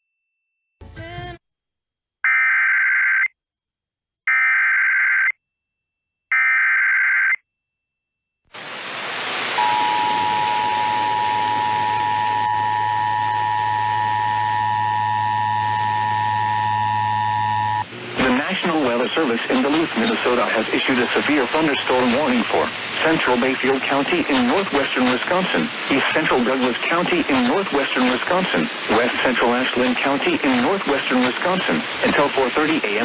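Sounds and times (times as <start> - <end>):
radio static: 8.6 - 33.0
two-tone attention signal: 9.6 - 17.8.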